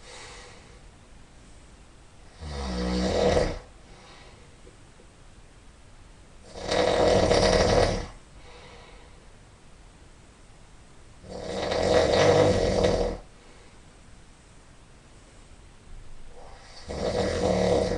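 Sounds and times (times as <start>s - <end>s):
quiet breathing: 0.0s - 4.8s, 7.9s - 9.4s, 12.9s - 14.0s
person snoring loudly: 2.3s - 3.7s, 6.4s - 8.2s, 11.2s - 13.3s, 16.3s - 17.9s.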